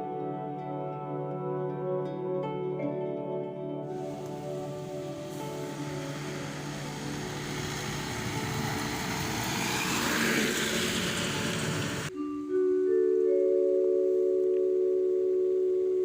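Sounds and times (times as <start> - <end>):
road vehicle passing by: 4.0 - 12.1.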